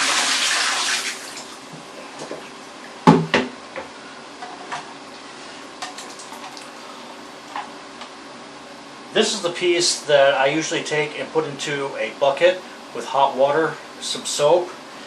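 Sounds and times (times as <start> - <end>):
water running into a sink: 0.0 - 1.6.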